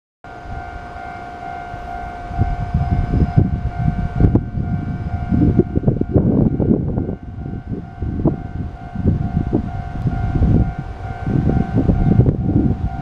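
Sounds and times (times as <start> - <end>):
level-crossing alarm ringing: 0.3 - 13.0
rumble of passing train: 0.3 - 13.0.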